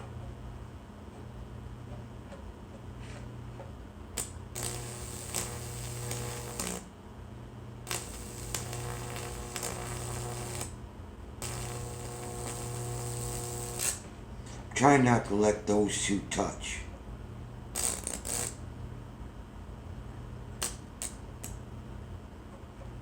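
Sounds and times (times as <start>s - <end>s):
loud electrical buzz with crackling: 4.1s - 6.9s, 7.8s - 10.8s, 11.4s - 14.1s, 17.7s - 18.6s, 20.5s - 21.6s.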